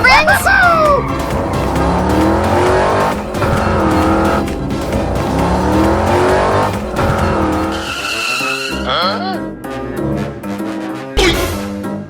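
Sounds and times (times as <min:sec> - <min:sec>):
car engines revving hard: 0:00.0 - 0:09.2.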